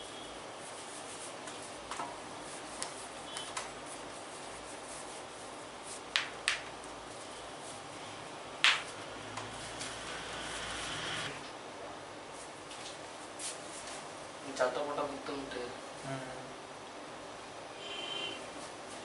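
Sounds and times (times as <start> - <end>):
hands slapping skin: 6.1 - 6.7, 8.6 - 8.9.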